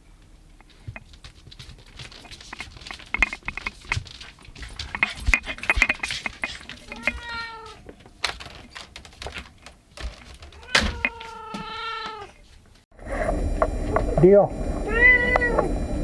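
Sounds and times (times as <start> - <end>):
tapping clicking and rustling: 0.6 - 11.2
cat meowing: 6.8 - 7.8, 10.6 - 12.4, 14.8 - 15.7.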